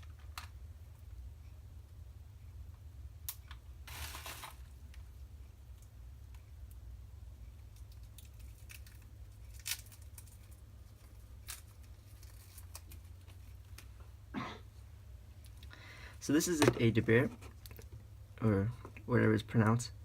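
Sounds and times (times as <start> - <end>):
low steady hum: 0.0 - 20.0
plastic film crinkling: 3.8 - 4.8, 7.8 - 13.9
plastic rustle: 3.8 - 4.8, 7.8 - 13.9.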